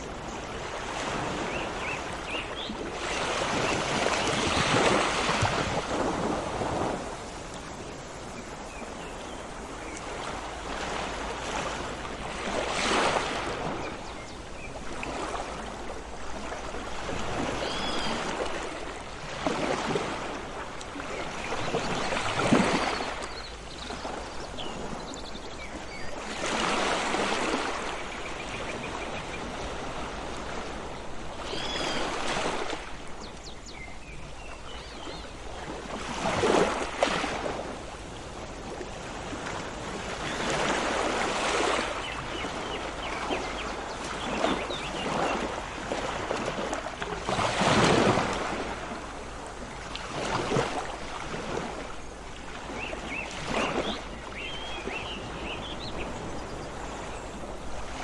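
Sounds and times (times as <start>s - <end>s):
sea waves breaking: 0.0s - 25.1s, 25.9s - 33.3s, 34.0s - 58.0s
faint bird chirps: 17.6s - 18.2s, 31.4s - 32.2s.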